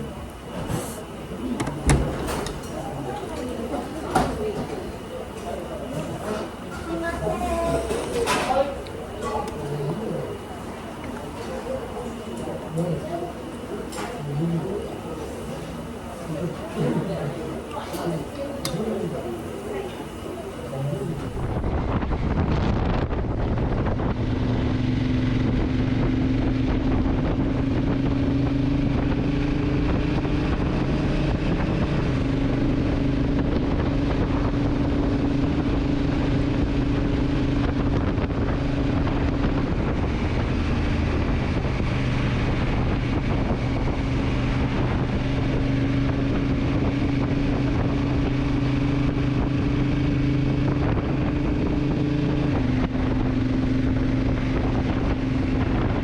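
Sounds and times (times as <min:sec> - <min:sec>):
wind rushing over microphone: 0:21.0 - 0:56.0
motorcycle engine running: 0:21.3 - 0:56.0.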